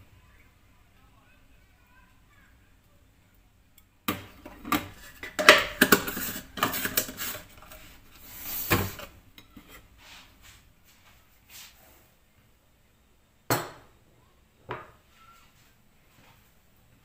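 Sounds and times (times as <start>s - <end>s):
dishes and cutlery clattering: 4.1s - 7.6s.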